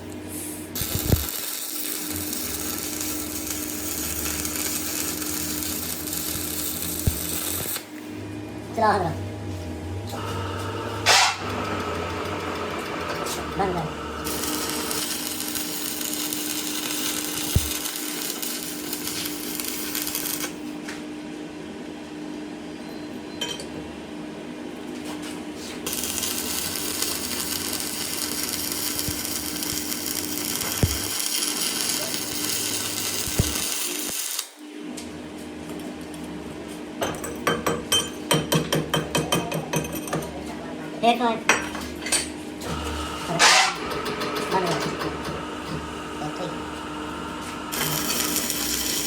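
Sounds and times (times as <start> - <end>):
machine humming: 0.7 - 20.6, 25.9 - 34.4, 42.7 - 49.0.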